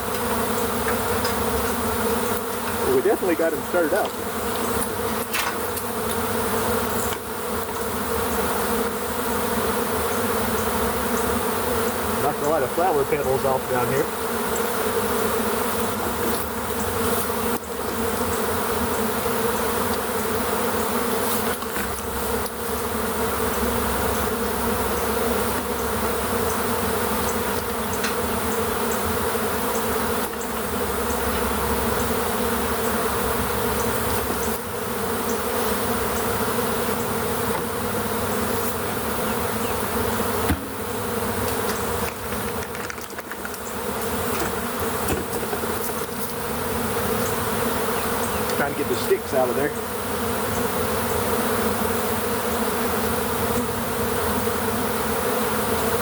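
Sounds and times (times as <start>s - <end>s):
bee swarm buzzing: 0.0s - 56.0s.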